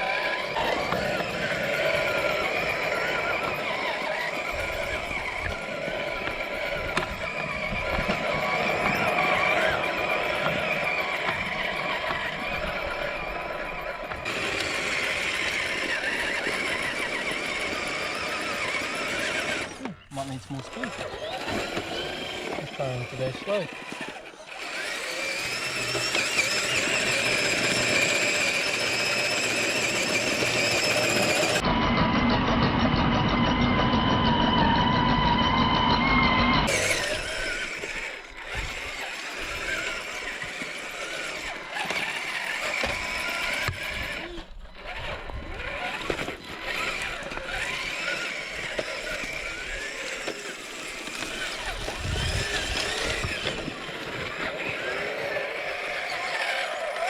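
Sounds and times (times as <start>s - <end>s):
electric motor whining: 0.0s - 57.0s.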